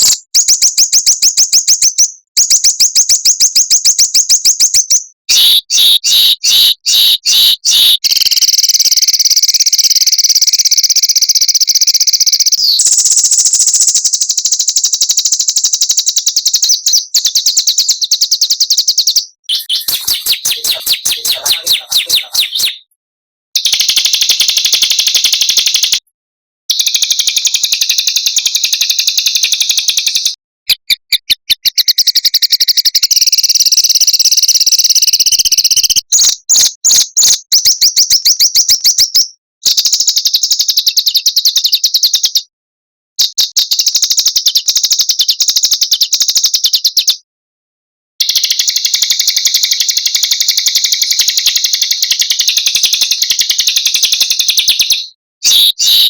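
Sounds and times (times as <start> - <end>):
songbirds trilling: 19.5 - 22.9.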